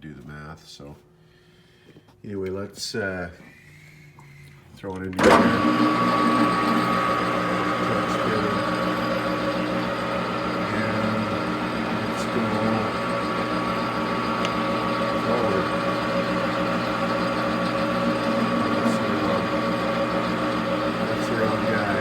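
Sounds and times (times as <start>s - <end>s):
metal lathe whine and gear hum: 5.2s - 22.0s.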